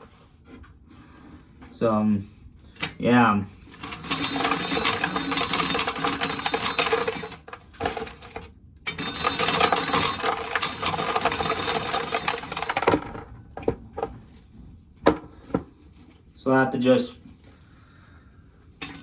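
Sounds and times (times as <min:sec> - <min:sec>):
corn kernels rattling into container: 0:03.7 - 0:13.1.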